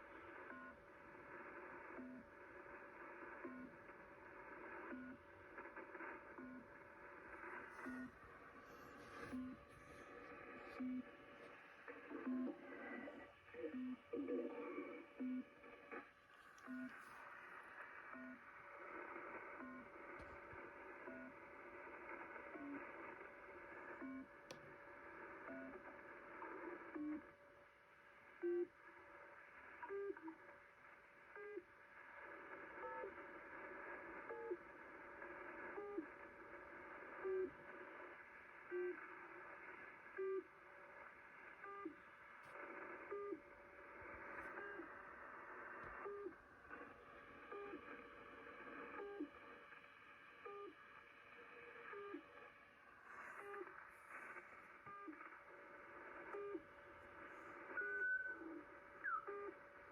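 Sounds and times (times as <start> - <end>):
radio static: 0.0 - 24.0, 32.0 - 59.9
radio tone pips: 57.0 - 59.4.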